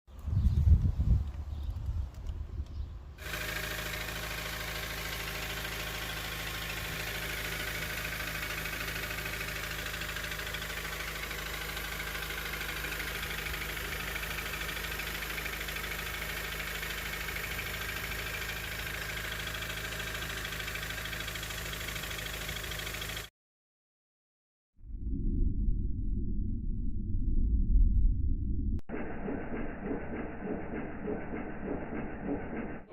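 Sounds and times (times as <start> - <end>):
car engine idling with knocking: 3.2 - 23.3, 28.9 - 32.9
irregular low rumble: 24.8 - 32.9.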